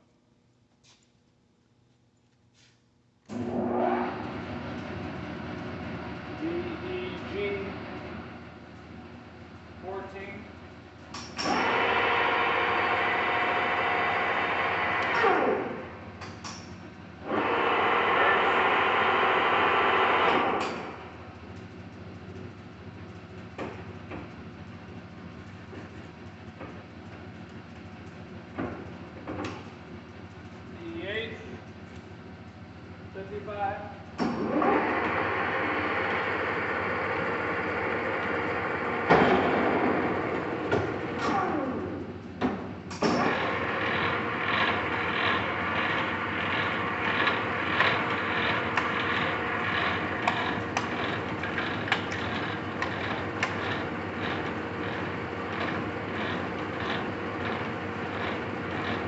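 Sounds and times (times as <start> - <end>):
lathe spindle whine: 11.4 - 16.0, 17.2 - 21.2, 34.4 - 42.0, 43.2 - 59.0.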